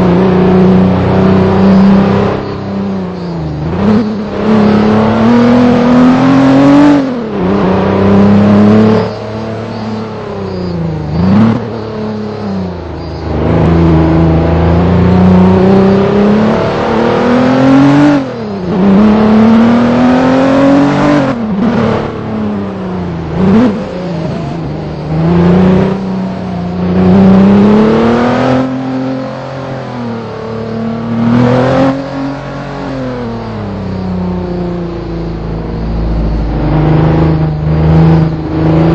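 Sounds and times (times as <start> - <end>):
vehicle engine revving: 0.0 - 38.9.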